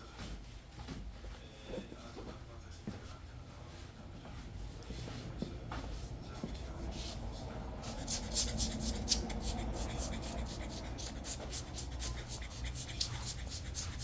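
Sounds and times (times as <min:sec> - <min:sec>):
steady low hum: 0:03.3 - 0:14.0
rubbing strokes on hard surface: 0:07.8 - 0:14.0.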